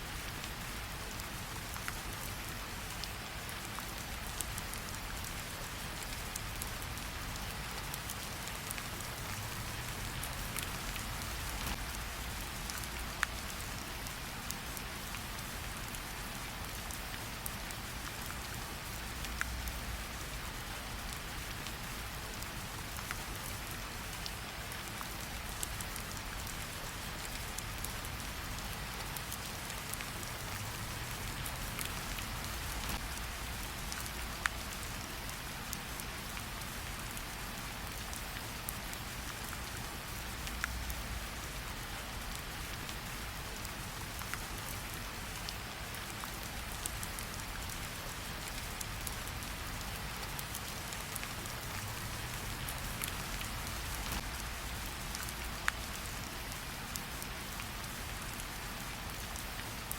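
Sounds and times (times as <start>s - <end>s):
steady rain falling: 0.0s - 59.9s
campfire crackling: 50.4s - 56.5s.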